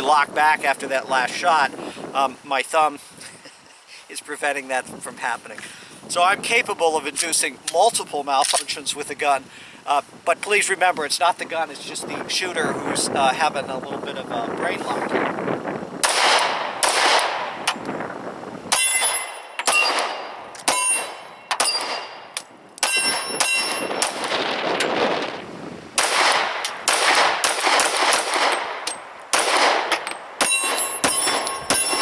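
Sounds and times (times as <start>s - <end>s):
pistol shots: 16.0s - 17.8s, 18.7s - 25.0s, 26.0s - 32.0s
metallic ringing: 18.8s - 23.9s, 30.4s - 32.0s.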